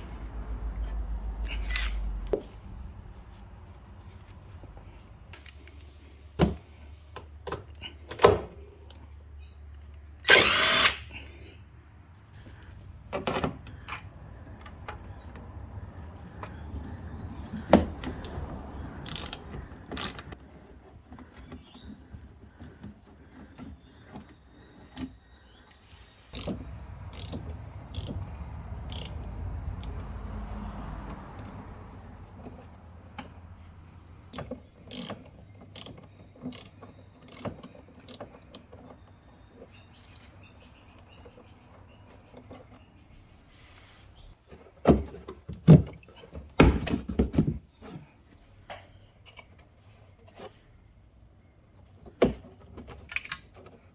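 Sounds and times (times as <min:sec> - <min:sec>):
sharp metallic clicks: 0:19.0 - 0:20.4, 0:26.3 - 0:30.1, 0:34.3 - 0:38.2.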